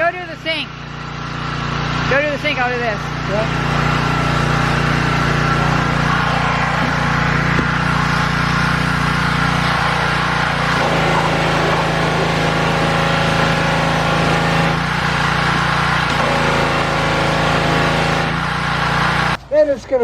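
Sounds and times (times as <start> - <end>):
pressure washer engine running: 0.0 - 19.4.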